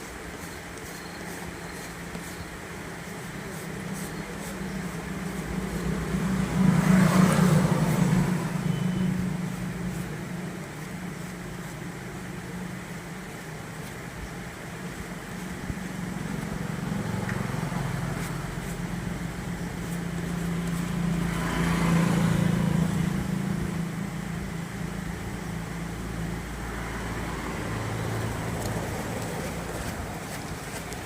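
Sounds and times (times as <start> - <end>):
road noise: 0.0 - 31.0
vehicle engine passing by: 3.8 - 11.3, 16.0 - 31.0.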